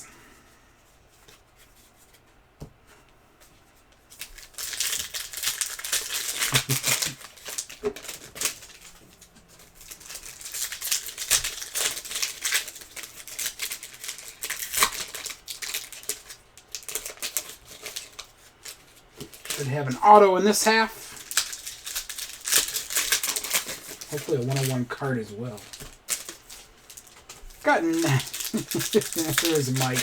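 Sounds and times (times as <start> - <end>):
cards being handled: 4.0 - 30.0
foil wrappers crinkling and tearing: 4.0 - 30.0.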